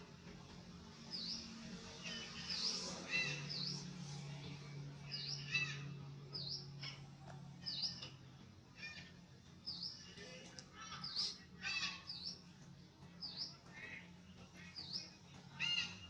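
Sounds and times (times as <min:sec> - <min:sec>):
bird chirping: 0:01.0 - 0:04.2, 0:05.0 - 0:08.2, 0:08.8 - 0:16.0
thin squeaky bird calls: 0:15.6 - 0:16.0.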